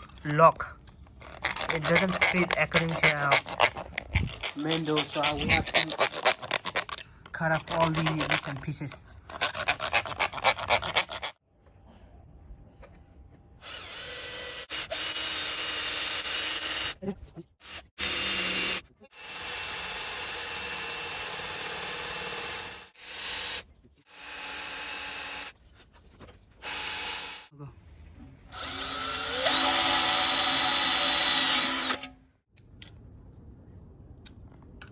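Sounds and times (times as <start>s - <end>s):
hand tool scraping: 1.2s - 11.4s
power tool running: 28.5s - 32.1s.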